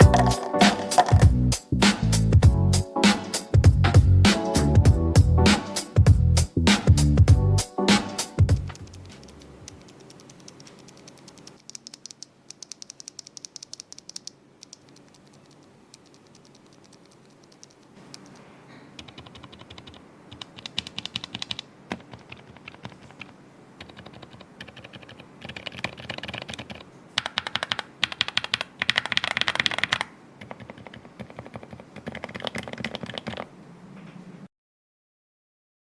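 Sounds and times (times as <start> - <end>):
mechanical keyboard typing: 0.0 - 1.3, 8.6 - 18.4, 19.0 - 33.5.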